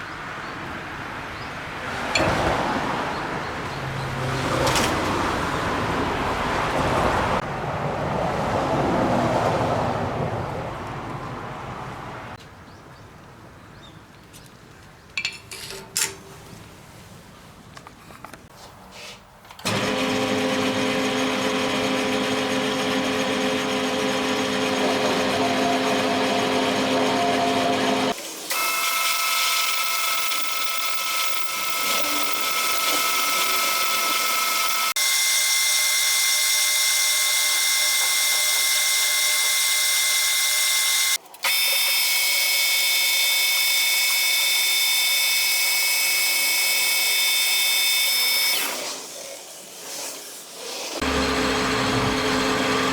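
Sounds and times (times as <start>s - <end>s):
machine tool whining: 19.6s - 49.0s, 51.0s - 52.9s.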